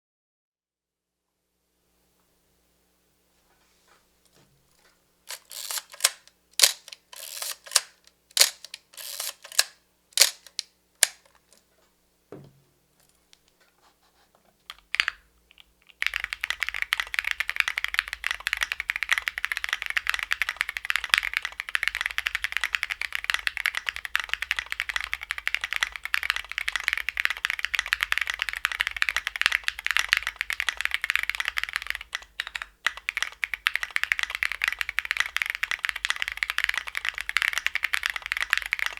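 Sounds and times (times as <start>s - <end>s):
mechanical keyboard typing: 5.3s - 11.6s, 14.6s - 38.9s.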